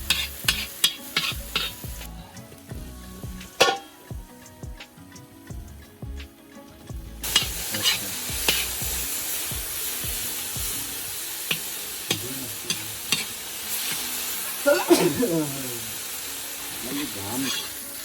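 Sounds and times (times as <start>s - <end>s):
utensil scraping a pan: 0.0s - 2.1s, 3.5s - 4.0s, 7.2s - 9.1s, 16.8s - 18.0s
faint background music: 0.0s - 18.0s
food sizzling in hot oil: 0.0s - 18.0s.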